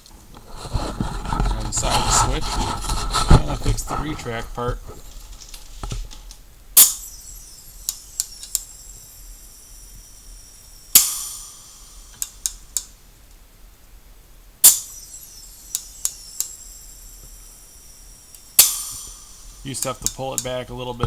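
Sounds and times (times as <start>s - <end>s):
air bursts: 6.8s - 12.9s, 14.6s - 21.0s
air hiss: 6.8s - 13.0s, 14.6s - 21.0s.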